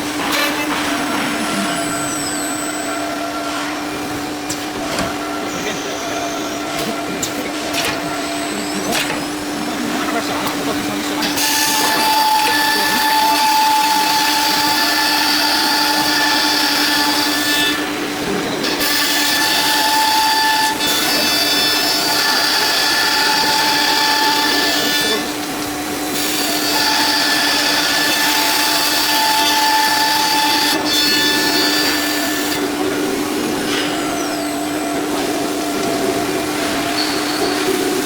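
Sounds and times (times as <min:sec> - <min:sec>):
router spindle whining: 0:00.0 - 0:38.0
cutting wood panel: 0:06.7 - 0:34.4.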